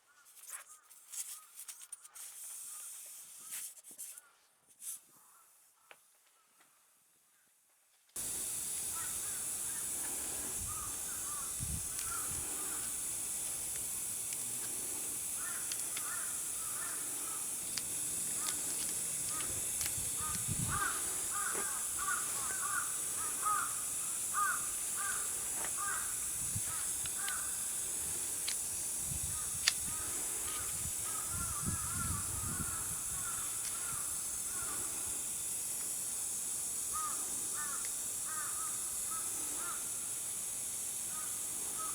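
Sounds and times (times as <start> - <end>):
steady hiss: 0.4 - 4.1, 8.2 - 41.9
birds calling: 8.2 - 35.1, 36.9 - 40.0.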